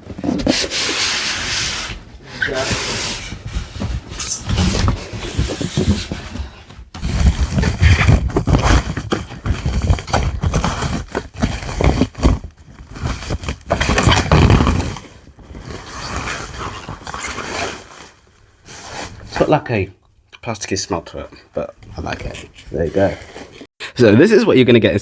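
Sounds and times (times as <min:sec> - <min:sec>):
plastic wrapping rustling: 0:00.0 - 0:19.6.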